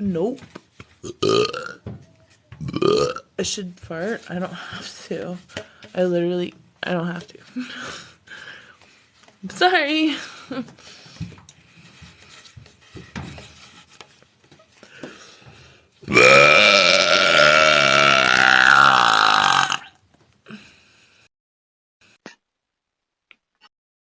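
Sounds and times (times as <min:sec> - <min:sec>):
woman belching: 0:01.0 - 0:01.8, 0:02.6 - 0:03.3, 0:16.1 - 0:20.0.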